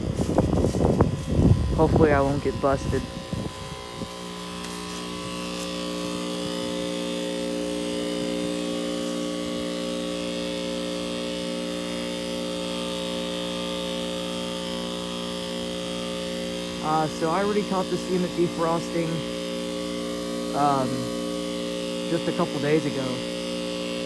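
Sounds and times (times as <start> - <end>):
condenser fan whoosh: 0.0 - 12.1
compressor electrical hum: 0.0 - 24.0.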